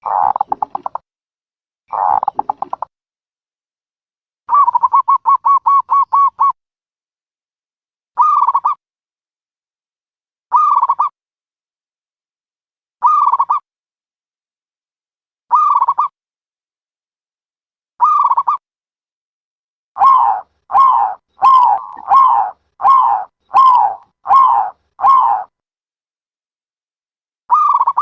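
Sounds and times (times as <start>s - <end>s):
dove cooing: 0.0s - 0.9s, 1.9s - 2.7s, 20.0s - 25.5s.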